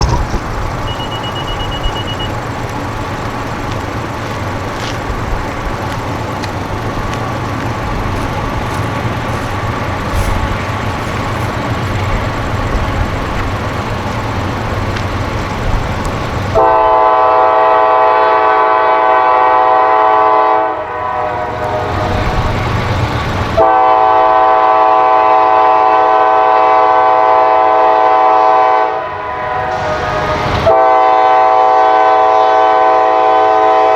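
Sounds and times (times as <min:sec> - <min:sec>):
freight train rumbling: 0:00.0 - 0:33.9
train horn long blasts: 0:16.2 - 0:33.9.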